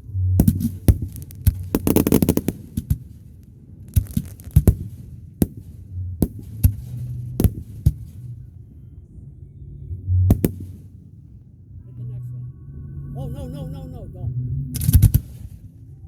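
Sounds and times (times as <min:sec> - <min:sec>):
fireworks bangs: 0:00.4 - 0:08.4, 0:10.3 - 0:10.9
fireworks crackling: 0:00.4 - 0:08.4, 0:10.3 - 0:10.9.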